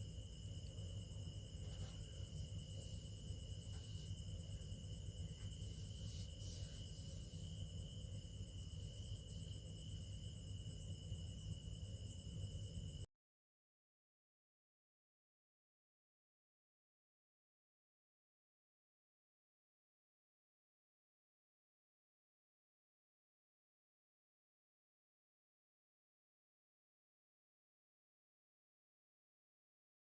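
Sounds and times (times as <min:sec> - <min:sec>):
steady low hum: 0:00.0 - 0:13.1.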